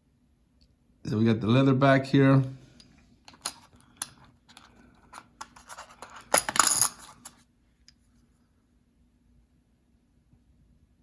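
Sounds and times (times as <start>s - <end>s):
coins clicking and tapping: 3.3s - 7.4s
folder scraping rustle: 5.1s - 7.4s.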